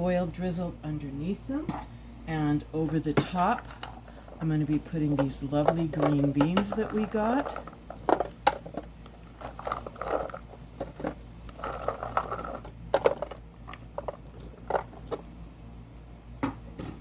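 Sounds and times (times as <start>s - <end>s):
green beans rustling and clicking: 2.5s - 15.3s.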